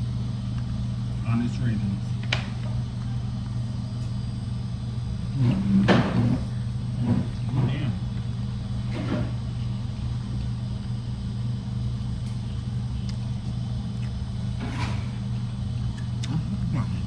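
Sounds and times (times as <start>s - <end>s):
steady low hum: 0.0s - 17.0s.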